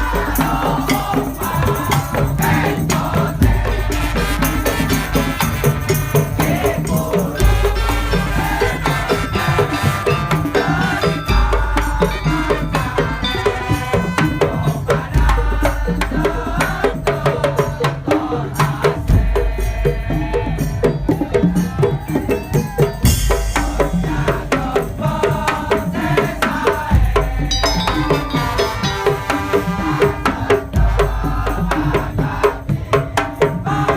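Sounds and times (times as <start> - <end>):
percussion ensemble music: 0.0 - 33.9
ringing melody: 7.6 - 14.8, 27.4 - 30.5.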